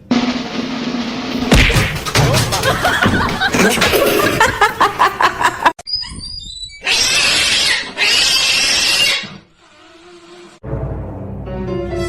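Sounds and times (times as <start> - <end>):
animal harsh calls: 5.8 - 10.6.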